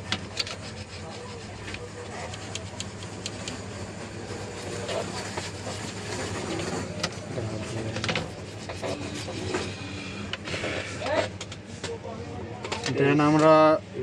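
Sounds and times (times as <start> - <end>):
electrical hum: 0.0 - 14.0.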